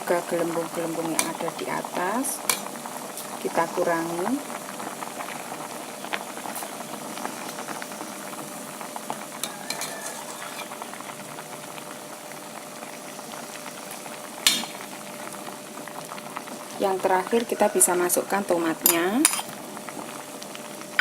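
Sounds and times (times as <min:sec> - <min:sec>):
soup boiling in a pot: 0:00.0 - 0:21.0
spoon clinking against pot: 0:09.4 - 0:10.7.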